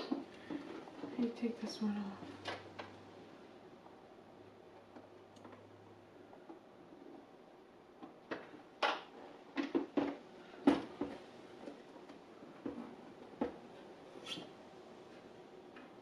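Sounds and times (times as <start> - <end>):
plastic clicks and knocks: 8.0 - 13.6.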